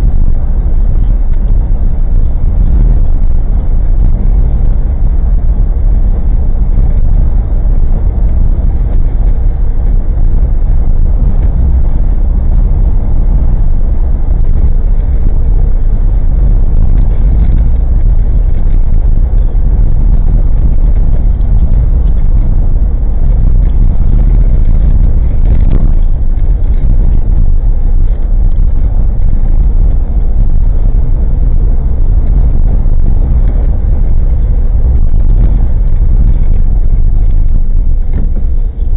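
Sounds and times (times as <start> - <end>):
car engine and road rumble: 0.0 - 38.9
car interior rattling: 0.0 - 38.9.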